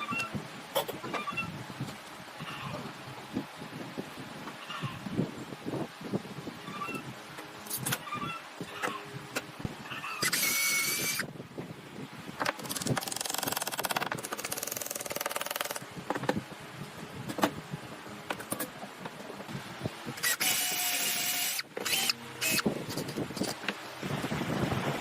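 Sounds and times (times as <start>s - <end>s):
power tool buzzing: 10.2s - 11.3s, 20.2s - 22.7s.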